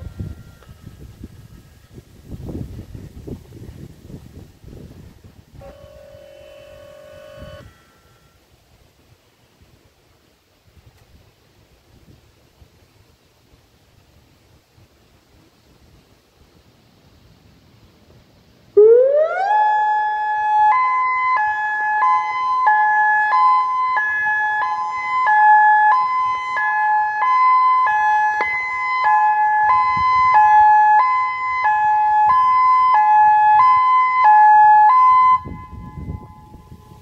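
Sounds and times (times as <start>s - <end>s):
outdoor warning siren hi-lo tone: 0.0s - 2.0s, 5.5s - 8.7s, 18.7s - 37.0s.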